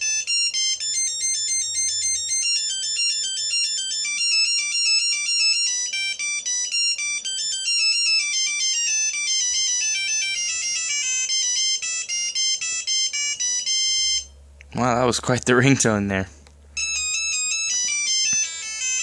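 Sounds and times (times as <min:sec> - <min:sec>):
cell phone ringtone melody: 0:00.0 - 0:14.9, 0:16.8 - 0:19.0.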